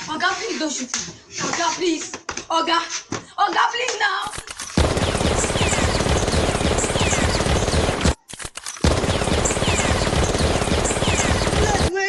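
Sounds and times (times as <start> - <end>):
rapid automatic gunfire: 4.8 - 12.0.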